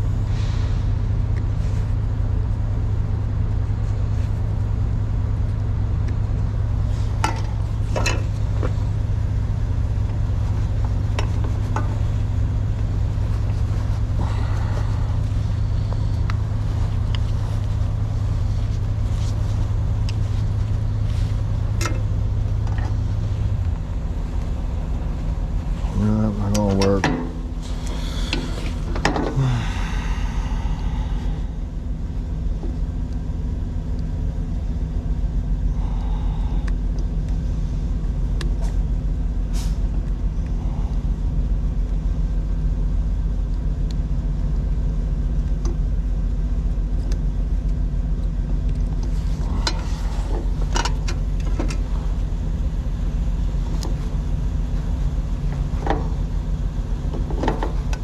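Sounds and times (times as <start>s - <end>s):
truck engine idling: 0.0s - 58.0s.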